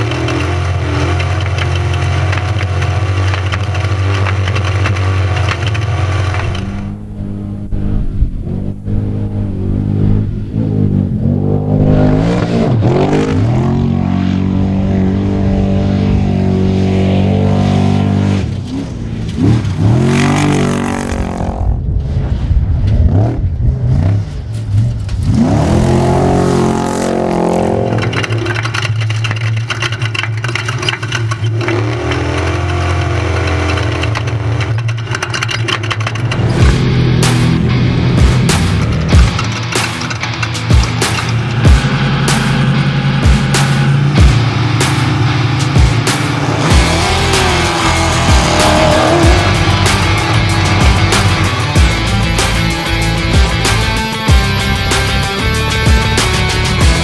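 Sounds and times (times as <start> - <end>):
truck engine revving hard: 0.0 - 21.9, 23.0 - 28.6, 31.5 - 34.8, 36.0 - 57.0.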